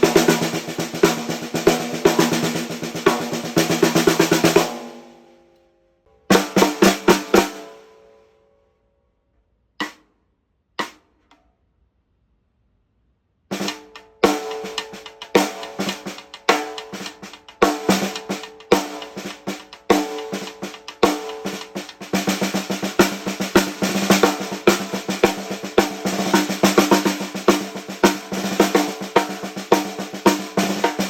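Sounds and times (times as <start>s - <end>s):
snare drum hits: 9.8s - 10.1s, 10.8s - 11.1s, 13.5s - 31.0s.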